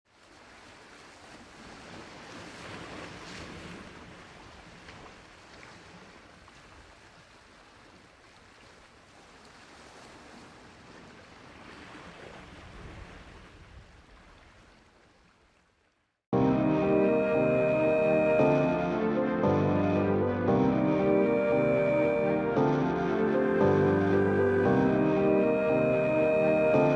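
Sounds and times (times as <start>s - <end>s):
rushing ambient noise: 16.4s - 26.9s.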